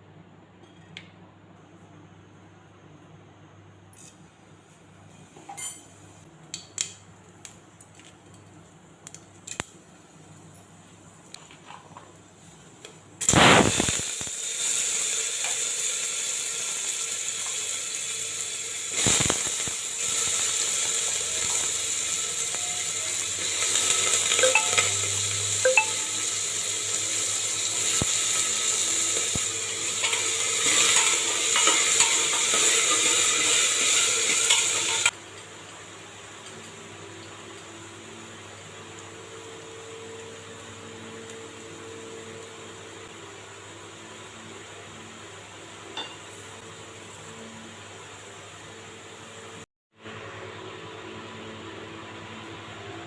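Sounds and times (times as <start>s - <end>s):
food sizzling in hot oil: 13.2s - 40.8s.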